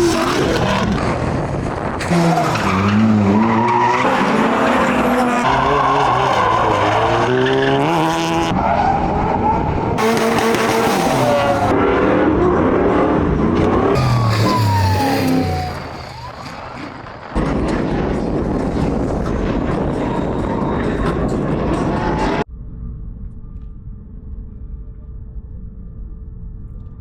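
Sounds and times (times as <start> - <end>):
car engines revving: 0.0 - 22.4
tyres squealing: 13.9 - 17.3.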